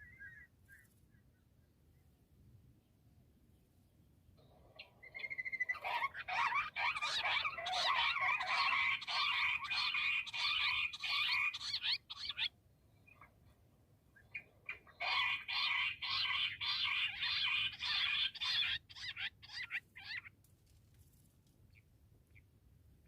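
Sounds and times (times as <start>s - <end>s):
quail calling: 4.7s - 12.5s, 14.2s - 20.3s.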